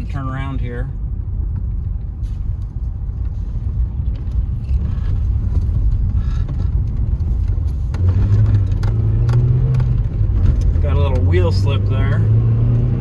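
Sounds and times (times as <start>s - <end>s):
car engine and road rumble: 0.0s - 13.0s.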